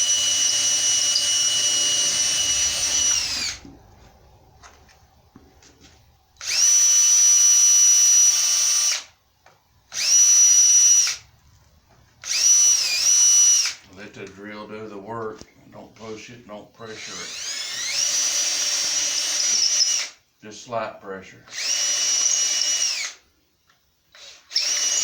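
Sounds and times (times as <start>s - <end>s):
electric drill whining: 0.0s - 4.9s, 5.8s - 9.2s, 9.9s - 11.3s, 12.2s - 13.9s, 16.9s - 20.2s, 21.5s - 23.2s, 24.1s - 25.0s.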